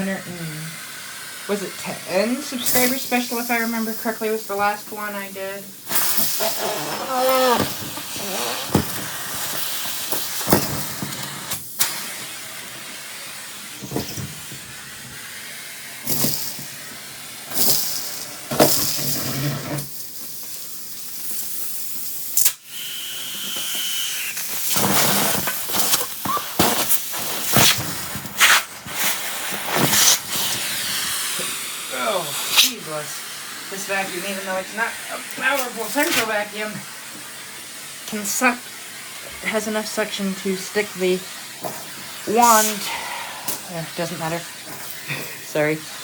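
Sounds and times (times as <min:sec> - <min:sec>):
debris rattling through hose: 0:05.8 - 0:12.1, 0:16.0 - 0:16.9, 0:17.5 - 0:22.2, 0:24.3 - 0:31.3, 0:33.7 - 0:37.4
vacuum rushing air: 0:23.2 - 0:35.8, 0:42.0 - 0:46.0.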